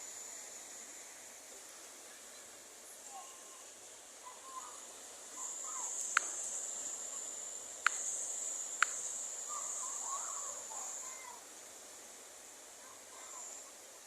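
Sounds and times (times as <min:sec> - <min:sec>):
cricket trilling: 0:00.0 - 0:14.0
sharp clicks: 0:06.0 - 0:06.4, 0:07.8 - 0:08.2, 0:08.8 - 0:09.2.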